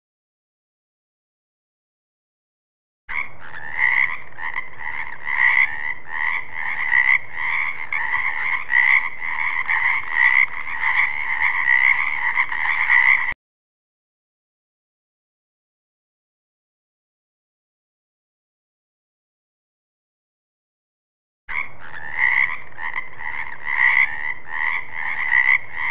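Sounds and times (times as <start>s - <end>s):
frog croaking: 3.1s - 13.4s, 21.5s - 25.9s.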